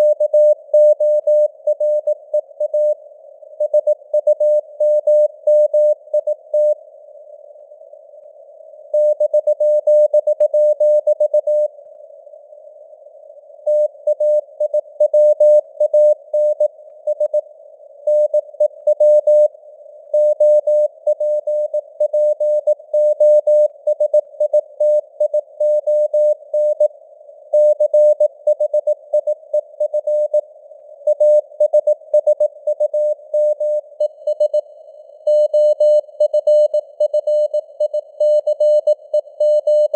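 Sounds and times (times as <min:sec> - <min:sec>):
morse code beeps: 0:31.1 - 0:34.6, 0:35.3 - 0:39.9.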